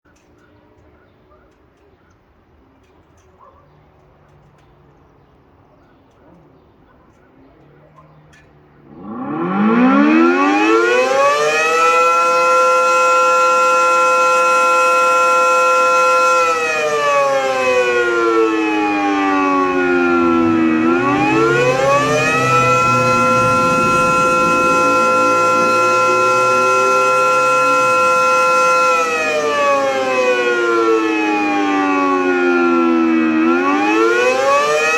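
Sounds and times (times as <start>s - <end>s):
air raid siren wailing: 8.8s - 34.9s.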